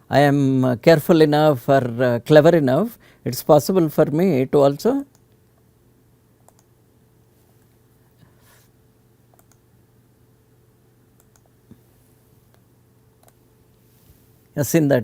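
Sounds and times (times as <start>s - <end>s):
low room hum: 0.0s - 15.0s
computer clicks: 6.4s - 6.7s, 9.3s - 9.6s, 11.2s - 11.6s, 13.2s - 13.4s.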